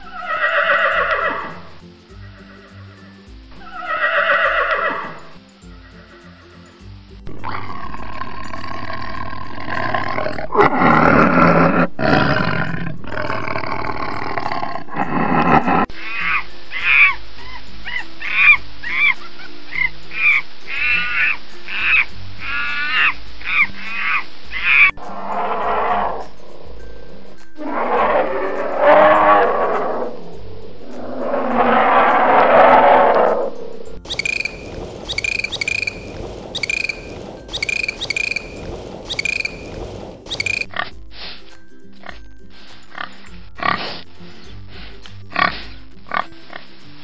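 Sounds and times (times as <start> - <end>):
animal rasping calls: 0.0 - 6.6, 7.3 - 41.0, 42.9 - 44.1, 45.3 - 46.7
steady background hiss: 0.0 - 10.6, 15.9 - 27.6, 28.5 - 40.7
animal giving short high calls: 16.0 - 26.4.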